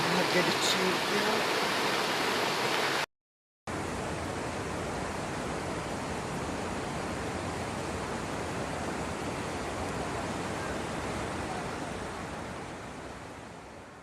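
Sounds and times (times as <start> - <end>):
heavy rain pouring: 0.0 - 3.1, 7.0 - 12.8.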